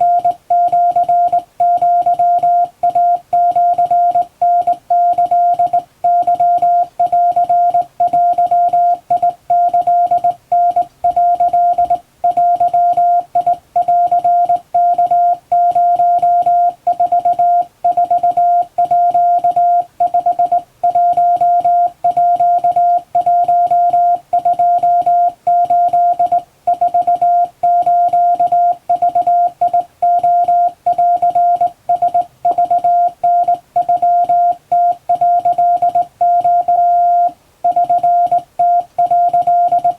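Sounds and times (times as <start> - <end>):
morse code sidetone: 0.0 - 39.9.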